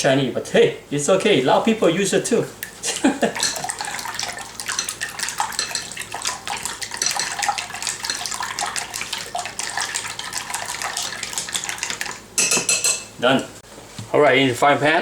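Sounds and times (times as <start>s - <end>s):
eggs being whisked in a bowl: 2.5s - 13.1s.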